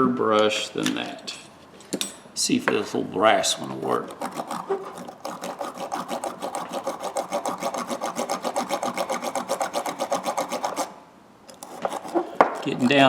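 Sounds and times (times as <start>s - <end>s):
wire brush scrubbing metal: 3.8s - 10.9s, 11.5s - 13.0s.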